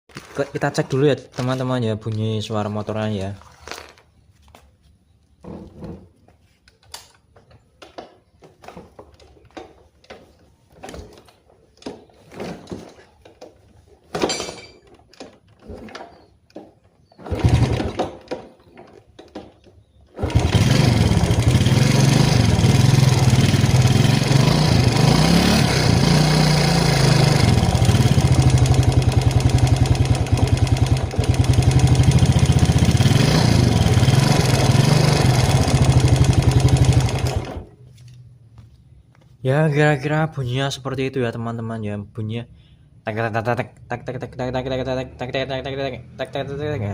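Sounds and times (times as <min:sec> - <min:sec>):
engine starting: 0:17.0 - 0:18.6, 0:20.1 - 0:22.6
motorcycle engine idling with ticking: 0:26.3 - 0:37.6.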